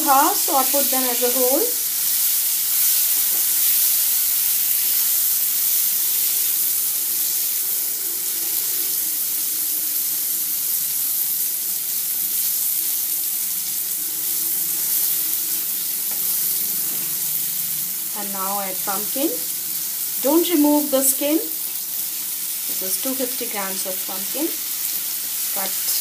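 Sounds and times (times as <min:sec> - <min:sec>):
food sizzling in hot oil: 0:00.0 - 0:26.0.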